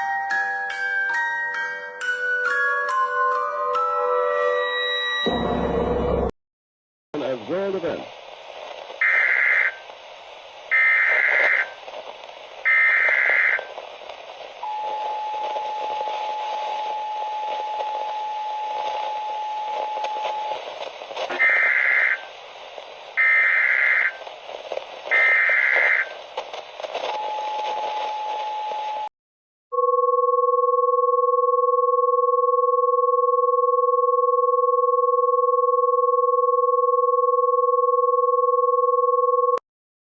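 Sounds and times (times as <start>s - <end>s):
radio hiss: 7.2s - 29.0s.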